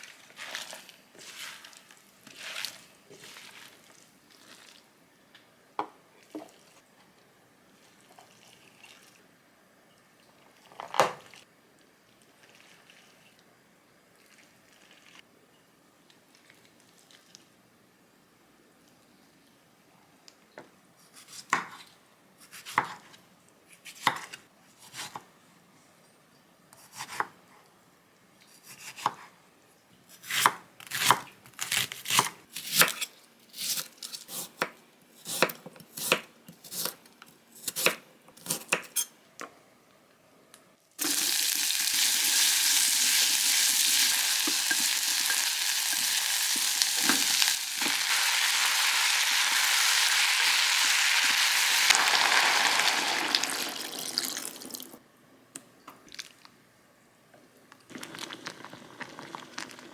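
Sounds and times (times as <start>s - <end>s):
food sizzling in a hot pan: 41.0s - 54.8s.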